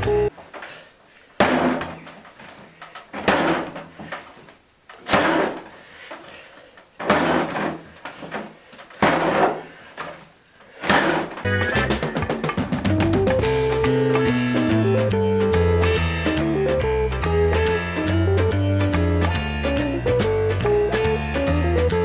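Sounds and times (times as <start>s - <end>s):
dough rustling: 0.0s - 13.5s
dough slapping: 0.3s - 13.5s.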